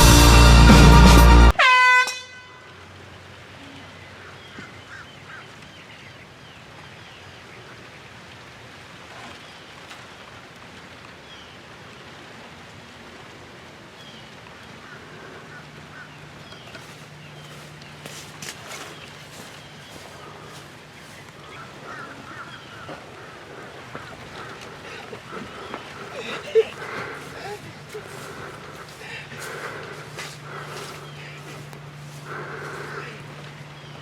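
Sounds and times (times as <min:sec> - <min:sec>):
loud music: 0:00.0 - 0:01.6
air horn blast: 0:00.0 - 0:02.7.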